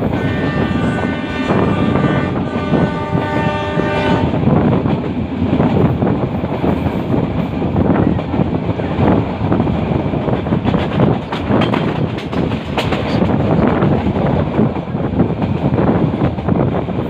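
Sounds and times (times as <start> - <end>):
train horn chord: 0.0 - 4.4
train wheels rumbling on track: 0.0 - 17.0.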